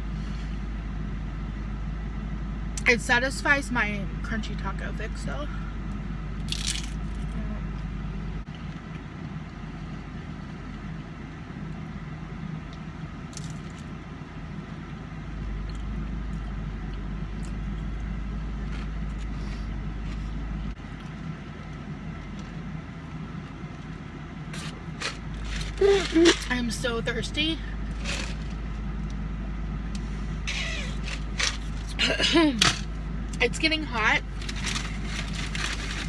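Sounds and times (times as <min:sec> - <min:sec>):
car engine rumbling: 0:00.0 - 0:36.0.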